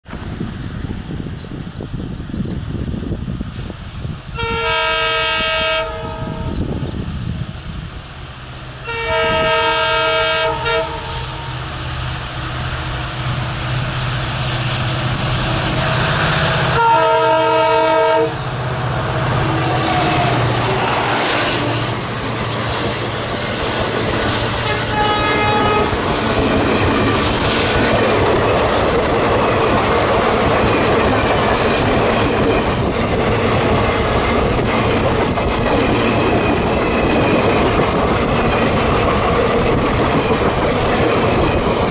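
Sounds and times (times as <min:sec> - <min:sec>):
diesel locomotive engine hum: 0:00.0 - 0:41.9
locomotive air horn blasts: 0:04.3 - 0:06.6, 0:08.8 - 0:11.5, 0:16.6 - 0:18.5, 0:19.1 - 0:22.0, 0:24.6 - 0:26.0
train wheels clattering over rails: 0:18.4 - 0:41.9.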